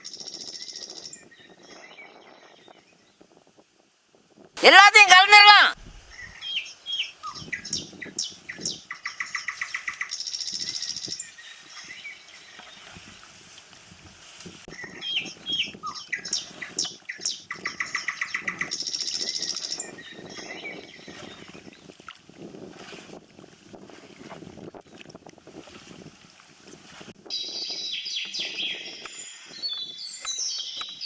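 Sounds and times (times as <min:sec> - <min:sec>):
songbird singing a buzzy trill: 0:00.0 - 0:03.2, 0:06.1 - 0:12.9, 0:14.7 - 0:21.9, 0:27.3 - 0:31.0.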